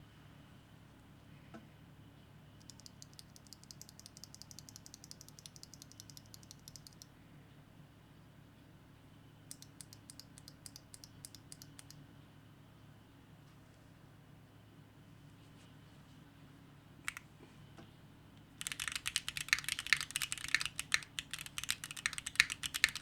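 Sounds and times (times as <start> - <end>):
fast typing on mechanical keyboard: 2.6 - 7.0, 18.6 - 23.0.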